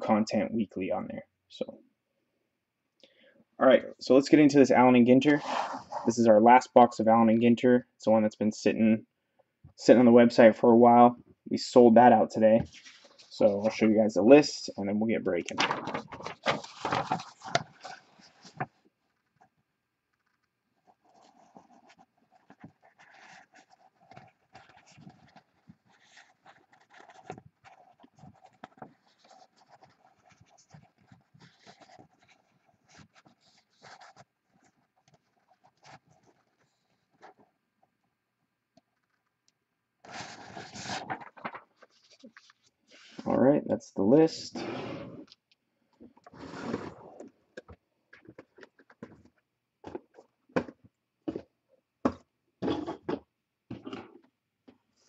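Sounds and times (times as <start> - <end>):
paper rustling and scratching: 12.7 - 13.9, 15.4 - 37.5, 40.0 - 43.3, 46.2 - 47.3.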